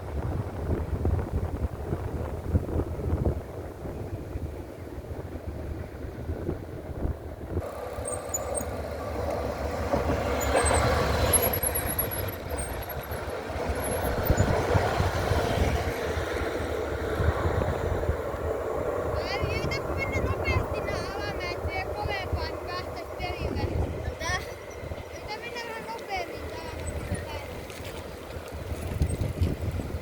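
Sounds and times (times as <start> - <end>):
train rumbling on rails: 0.0 - 30.0
wheel squeals: 7.6 - 16.5, 23.2 - 27.5.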